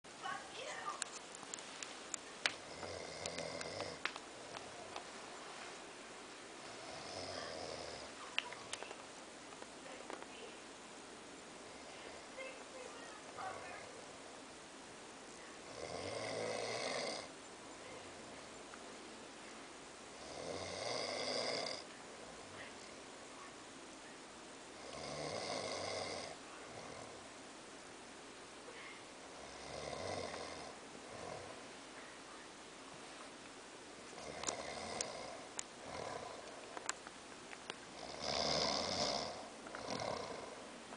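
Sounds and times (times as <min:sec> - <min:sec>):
man snoring heavily: 0:02.6 - 0:04.0, 0:06.7 - 0:08.1, 0:15.7 - 0:17.3, 0:20.2 - 0:21.8, 0:24.8 - 0:27.2, 0:29.4 - 0:31.5, 0:34.2 - 0:36.4, 0:37.9 - 0:40.6.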